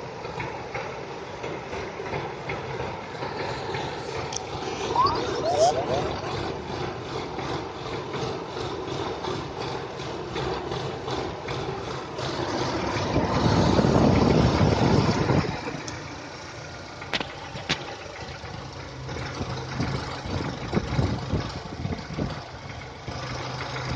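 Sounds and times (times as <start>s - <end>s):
car engine idling with knock: 0.0s - 4.8s, 6.2s - 23.9s.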